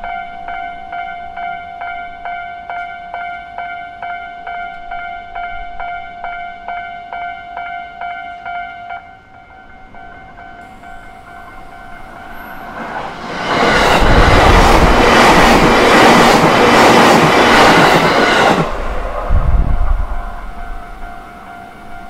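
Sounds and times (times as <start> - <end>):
crossing warning bell ringing: 0.0 - 18.8, 19.9 - 22.0
train wheels clattering: 10.2 - 22.0.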